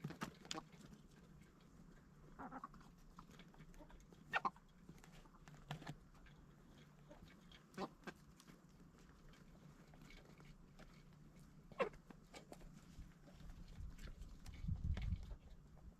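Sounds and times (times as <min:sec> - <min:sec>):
chickens clucking: 0:00.3 - 0:05.5, 0:06.7 - 0:08.1, 0:11.6 - 0:12.1.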